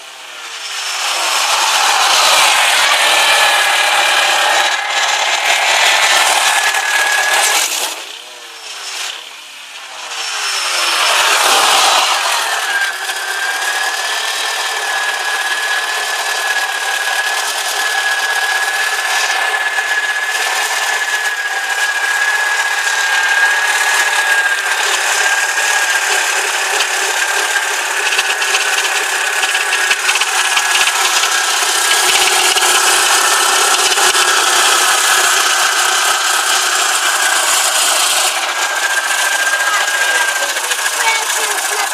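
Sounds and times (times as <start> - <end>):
high whine: 0.0 - 41.9
car engine knocking rattle: 10.8 - 41.9.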